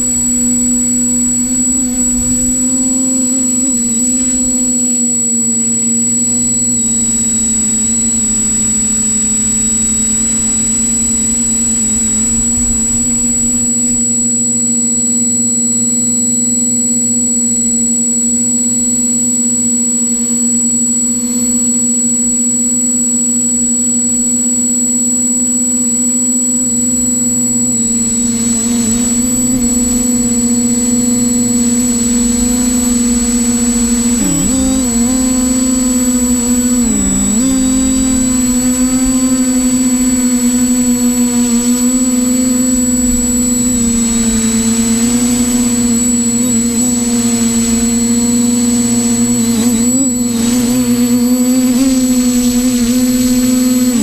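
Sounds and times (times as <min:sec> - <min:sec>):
drone propellers buzzing: 0:00.0 - 0:54.0
wind rumble on microphone: 0:09.9 - 0:13.9, 0:27.7 - 0:54.0.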